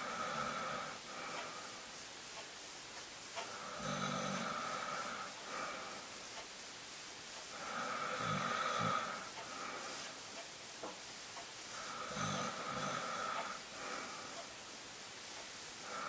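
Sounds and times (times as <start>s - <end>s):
person snoring: 0.0s - 1.8s, 3.5s - 6.0s, 7.5s - 9.9s, 11.8s - 14.4s.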